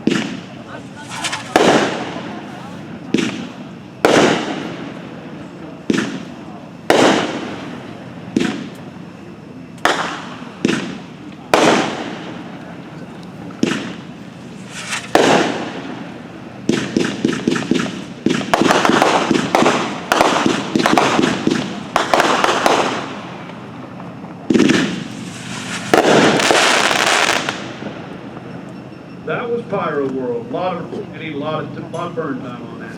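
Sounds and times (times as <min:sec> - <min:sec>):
firework bangs: 0:00.0 - 0:12.8, 0:13.4 - 0:28.7
firework crackling volleys: 0:00.0 - 0:28.9.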